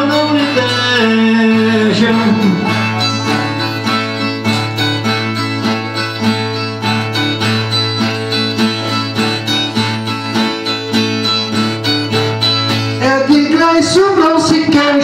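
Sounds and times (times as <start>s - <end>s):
strummed and plucked guitar: 0.0s - 15.0s.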